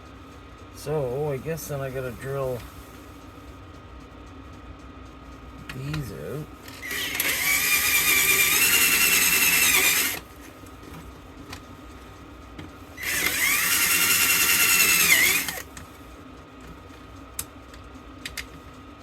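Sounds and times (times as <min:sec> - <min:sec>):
electric drill drilling metal: 0:06.8 - 0:10.2, 0:13.0 - 0:15.7
small clicks: 0:16.6 - 0:18.6.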